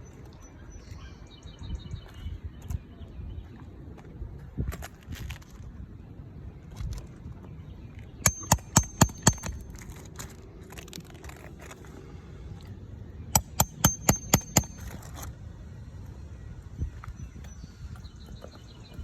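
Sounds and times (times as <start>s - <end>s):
hammer strikes with ringing note: 8.3s - 9.6s, 13.4s - 15.0s.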